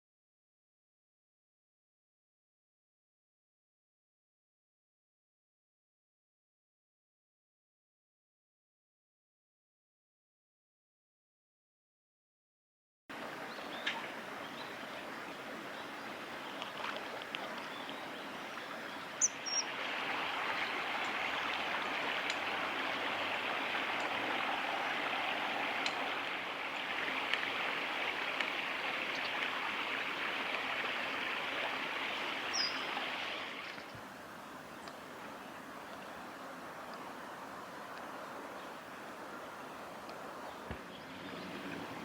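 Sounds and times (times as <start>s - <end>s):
stream water rushing: 13.1s - 42.0s
high falling bird calls: 17.5s - 19.7s, 32.5s - 33.0s.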